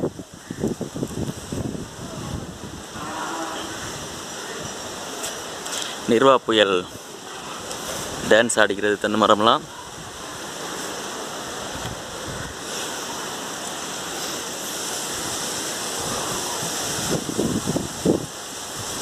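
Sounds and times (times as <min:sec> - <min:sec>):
storm wind rushing: 0:00.0 - 0:05.1, 0:11.5 - 0:13.6, 0:14.5 - 0:19.0
wind buffeting microphone: 0:00.0 - 0:05.2, 0:11.5 - 0:12.7, 0:14.2 - 0:19.0
heavy rain: 0:00.0 - 0:19.0.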